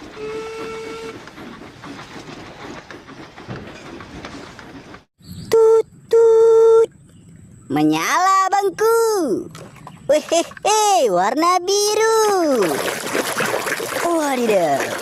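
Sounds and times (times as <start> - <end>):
steam train whistle: 0.0 - 1.2
steam train chugging: 0.0 - 5.1.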